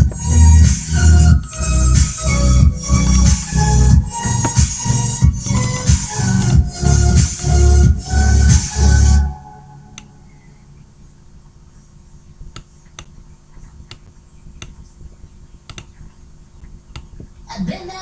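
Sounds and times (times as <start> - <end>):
faint low hum: 9.2 - 18.0
computer mouse clicks: 15.7 - 16.1.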